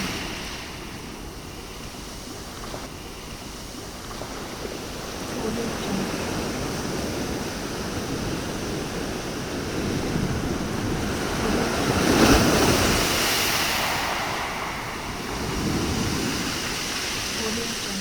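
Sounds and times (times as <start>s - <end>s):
sea waves breaking: 0.0s - 18.0s.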